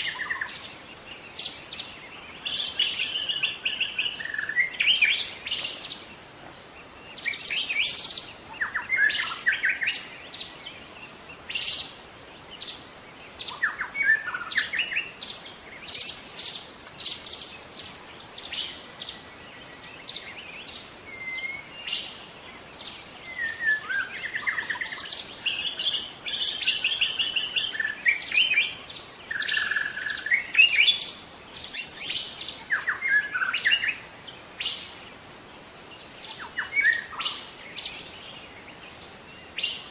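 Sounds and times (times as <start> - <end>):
bird singing whistles and chips: 36.2 - 38.1.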